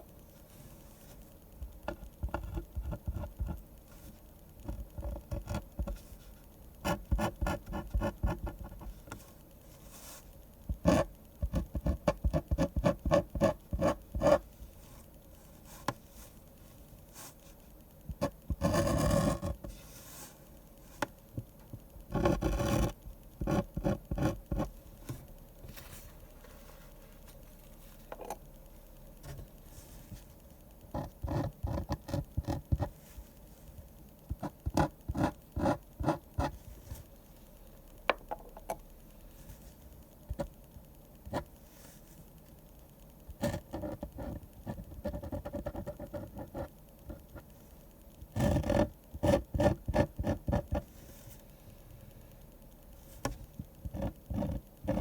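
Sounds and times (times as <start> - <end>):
pen drawing on paper: 6.8 - 8.8, 10.8 - 14.4, 18.2 - 20.0, 22.1 - 24.7, 30.9 - 32.9, 34.3 - 36.6, 43.4 - 47.2, 48.3 - 50.9, 53.9 - 55.0.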